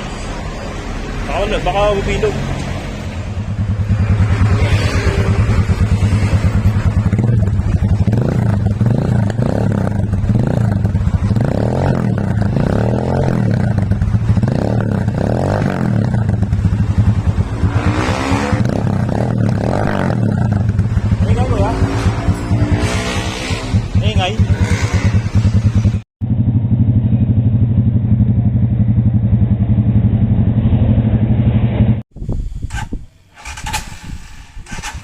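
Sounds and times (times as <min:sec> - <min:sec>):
motorcycle engine running: 0:03.1 - 0:32.0.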